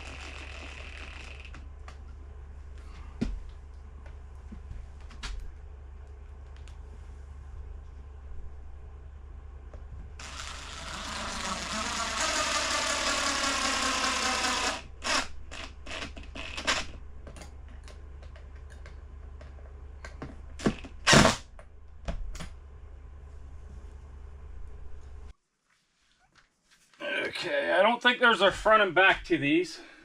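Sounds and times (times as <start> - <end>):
power drill driving screw: 0.0 - 1.6, 10.2 - 16.9.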